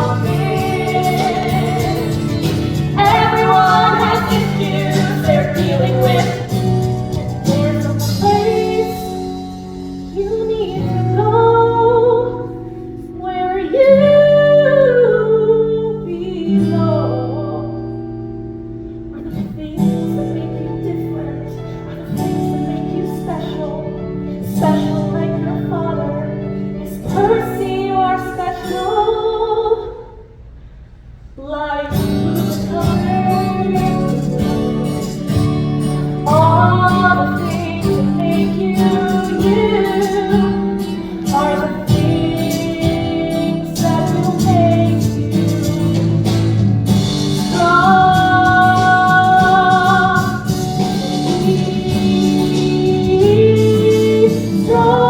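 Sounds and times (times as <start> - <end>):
instrumental accompaniment: 0.0 - 14.5, 31.9 - 55.0
woman singing: 0.0 - 18.0, 19.1 - 30.3, 31.4 - 55.0.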